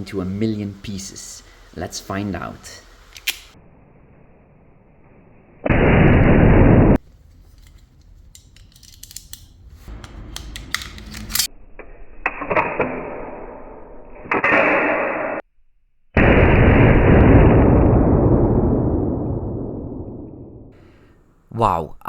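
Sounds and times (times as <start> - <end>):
metallic clicks of gun handling: 3.1 - 3.6, 7.2 - 11.5.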